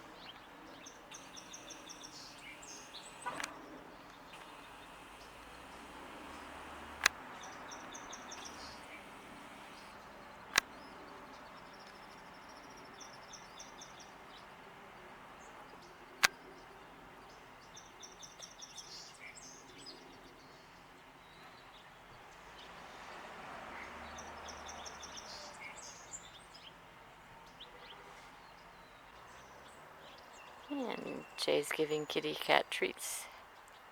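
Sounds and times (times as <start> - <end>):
outdoor background hiss: 0.0 - 33.9
songbirds trilling: 0.0 - 33.9
sharp clicks: 0.8 - 12.7, 16.0 - 16.7.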